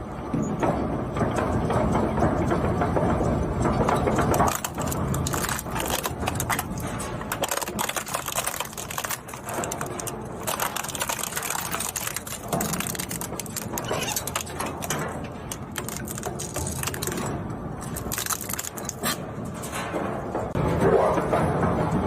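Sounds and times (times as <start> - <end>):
plastic crackling clatter: 3.7 - 20.6.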